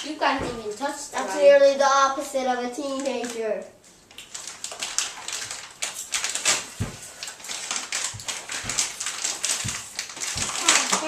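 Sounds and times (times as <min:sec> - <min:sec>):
plastic packaging crinkling: 0:02.9 - 0:11.0
dull thumps: 0:08.0 - 0:10.6.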